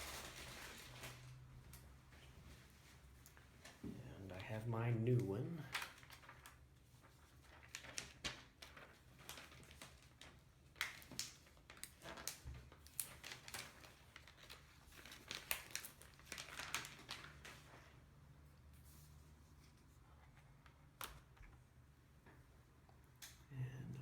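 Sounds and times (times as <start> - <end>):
plastic packaging crinkling: 0.0 - 1.5, 5.6 - 17.9.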